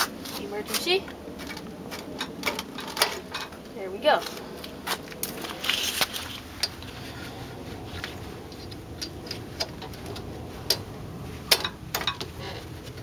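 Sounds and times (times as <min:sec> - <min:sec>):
light clicks on engine parts: 0:08.0 - 0:10.9.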